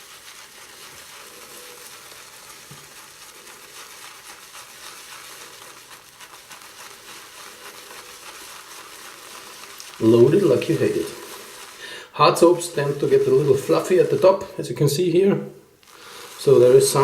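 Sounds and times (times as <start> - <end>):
shaving brush rubbing on soap: 0.0 - 17.0.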